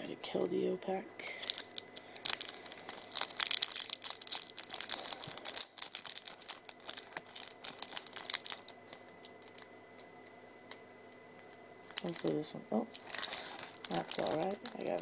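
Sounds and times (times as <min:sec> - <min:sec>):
foil wrapper crinkling and tearing: 0:01.3 - 0:10.8, 0:11.4 - 0:15.0.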